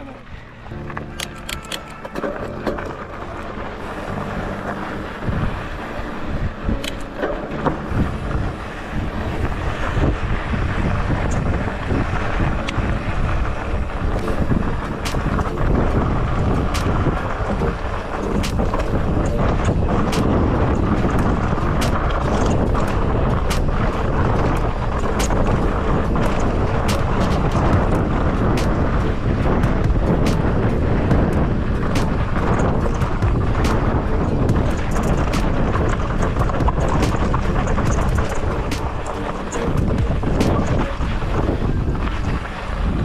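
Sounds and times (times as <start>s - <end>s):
steady rumble: 0.0s - 43.0s
wind buffeting microphone: 0.0s - 43.0s
sharp clicks and rattles: 0.7s - 4.8s, 12.6s - 42.5s.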